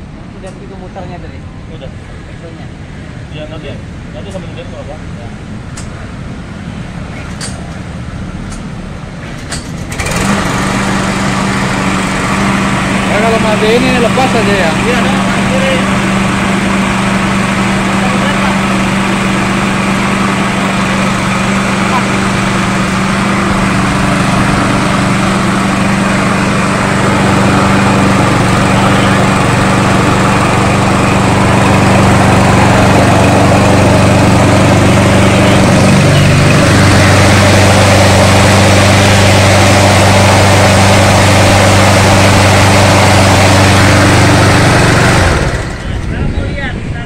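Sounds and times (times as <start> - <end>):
lawn mower engine running: 8.6 - 46.2.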